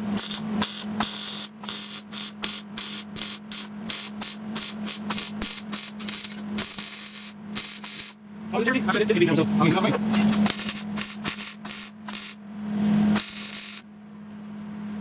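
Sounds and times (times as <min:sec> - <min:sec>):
welder arc crackling: 0:00.0 - 0:08.2, 0:10.2 - 0:12.4, 0:13.2 - 0:13.8.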